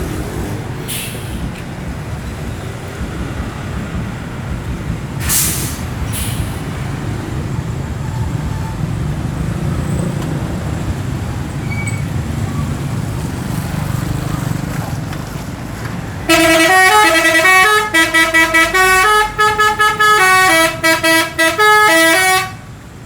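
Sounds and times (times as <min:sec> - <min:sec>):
air brakes hissing: 0:00.0 - 0:01.7, 0:05.2 - 0:08.9
diesel engine idling: 0:00.0 - 0:14.8, 0:15.5 - 0:23.0.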